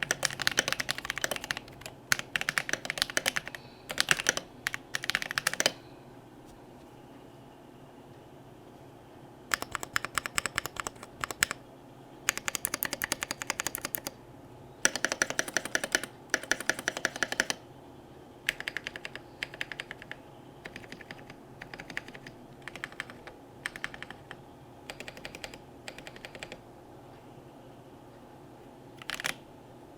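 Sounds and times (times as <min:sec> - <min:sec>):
mechanical keyboard typing: 0:00.0 - 0:05.8, 0:09.5 - 0:11.6, 0:12.3 - 0:14.2, 0:14.8 - 0:17.6, 0:18.5 - 0:26.6, 0:29.0 - 0:29.4.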